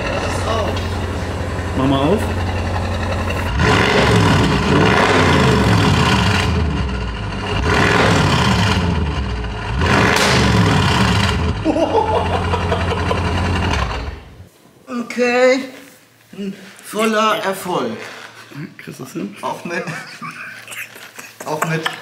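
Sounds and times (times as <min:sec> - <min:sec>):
car engine revving: 0:00.0 - 0:14.5.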